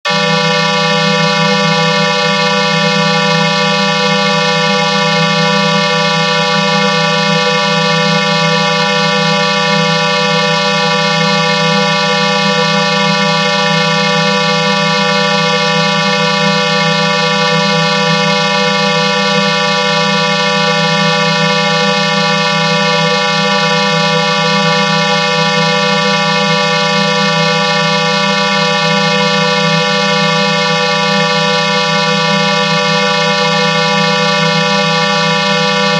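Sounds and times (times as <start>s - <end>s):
synthesized vocoder drone chord: 0.1s - 35.9s.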